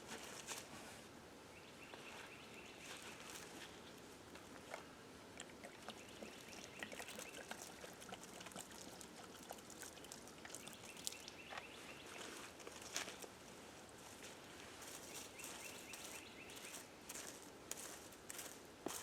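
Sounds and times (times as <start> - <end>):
faint swamp ambience: 1.5 - 19.0.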